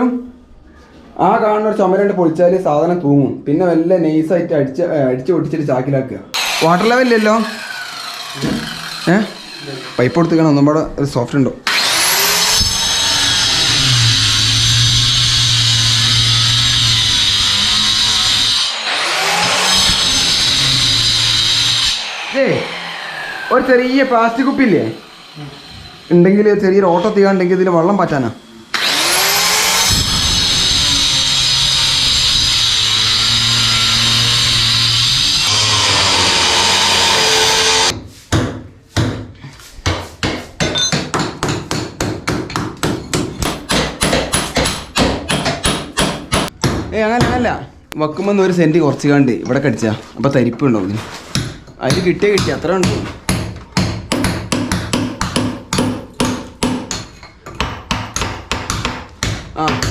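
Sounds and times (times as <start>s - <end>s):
disc cutter cutting stone: 6.4s - 10.6s, 11.7s - 37.9s.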